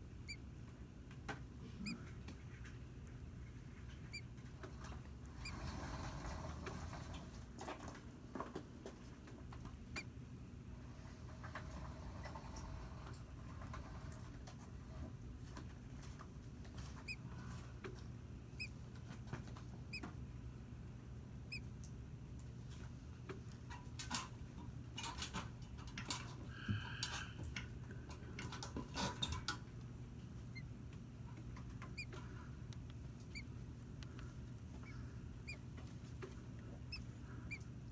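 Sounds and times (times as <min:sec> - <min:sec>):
steady low hum: 0:26.4 - 0:37.9.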